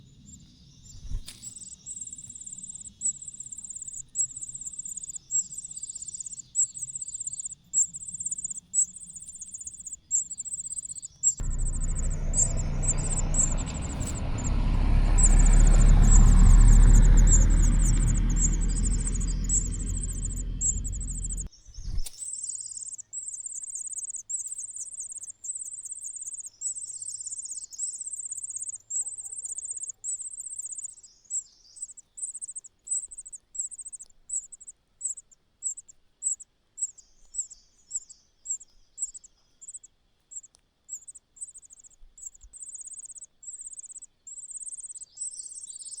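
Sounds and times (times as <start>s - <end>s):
nestlings begging chirps: 0.0s - 46.0s
low rumble: 11.4s - 22.0s.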